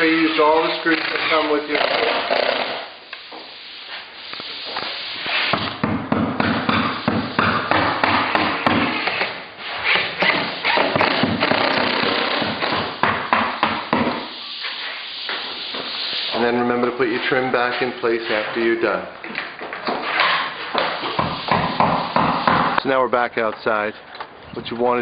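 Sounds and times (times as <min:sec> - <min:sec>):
tools knocking and tapping: 0:12.4 - 0:14.3.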